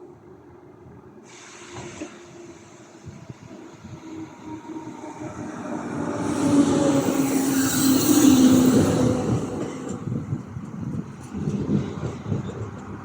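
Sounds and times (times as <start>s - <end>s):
hiss: 1.2s - 4.7s
electric train running: 3.3s - 11.0s.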